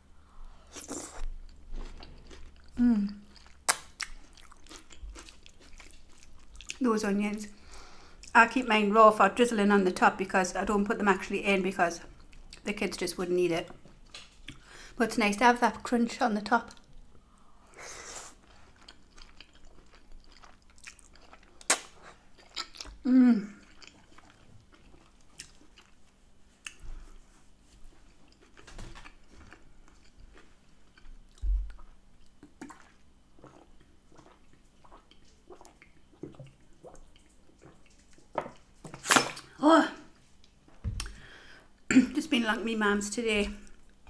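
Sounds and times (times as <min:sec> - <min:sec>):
close chewing with mouth clicks: 0:00.5 - 0:06.8, 0:18.0 - 0:38.8
person humming mm: 0:02.8 - 0:03.2, 0:23.0 - 0:23.6.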